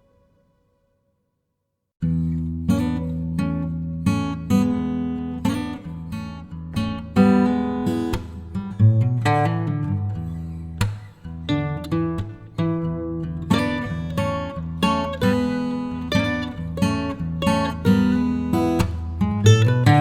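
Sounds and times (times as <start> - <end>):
acoustic guitar strummed and plucked: 2.0 - 20.0.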